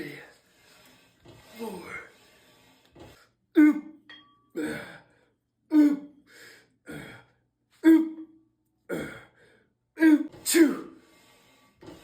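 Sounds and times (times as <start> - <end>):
person grunting and gasping: 4.6 - 5.1, 8.9 - 10.9.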